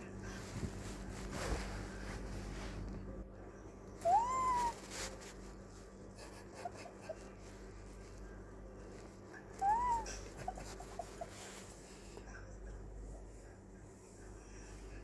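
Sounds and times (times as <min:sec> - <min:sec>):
cat meowing: 0:04.0 - 0:05.0, 0:09.6 - 0:10.3.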